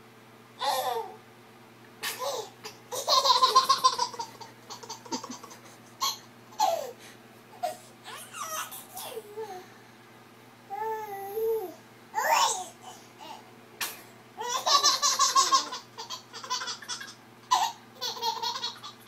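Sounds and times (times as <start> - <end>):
baby laughing: 2.0 - 7.0, 7.6 - 9.2, 14.4 - 19.0.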